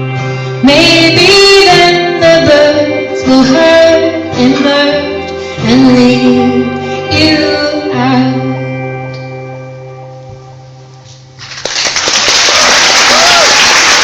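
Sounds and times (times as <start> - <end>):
strummed guitar chords: 0.0 - 11.4
woman singing wordless notes: 0.6 - 9.1.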